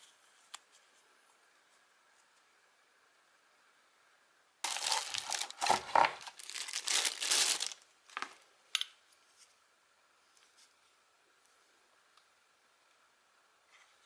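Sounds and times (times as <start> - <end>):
packaging crinkling: 4.6 - 8.4.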